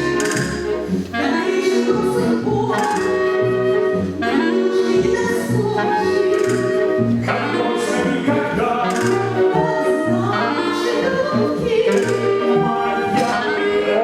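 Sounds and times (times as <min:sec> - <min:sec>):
singing with instrumental music: 0:00.0 - 0:14.0.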